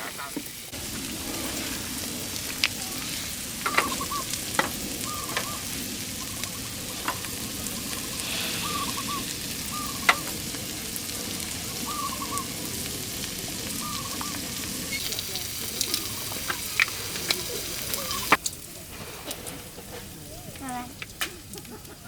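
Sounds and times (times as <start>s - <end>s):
food sizzling in a pan: 0.0s - 22.0s
short wavering call: 3.7s - 4.3s, 7.7s - 10.3s, 11.8s - 12.6s.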